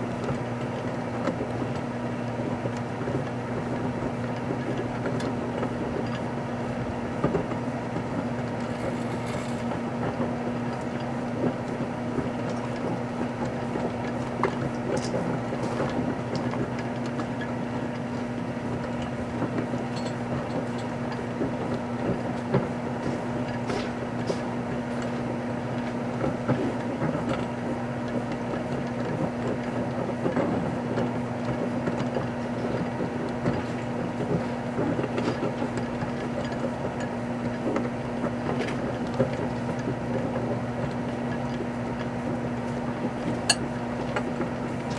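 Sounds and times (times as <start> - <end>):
microwave oven humming: 0.0 - 44.9
small crackles and clicks: 8.4 - 20.9.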